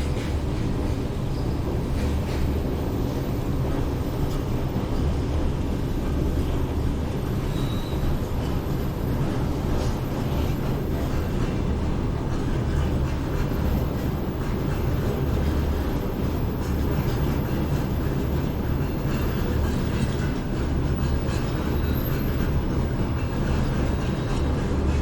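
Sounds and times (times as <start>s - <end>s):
train rumbling on tracks: 0.0s - 25.0s.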